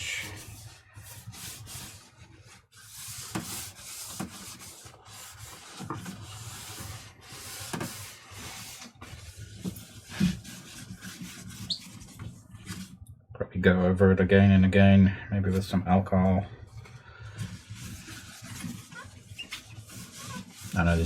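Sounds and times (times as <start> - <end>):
rubbing plastic casing: 0.0 - 13.0, 17.3 - 21.0.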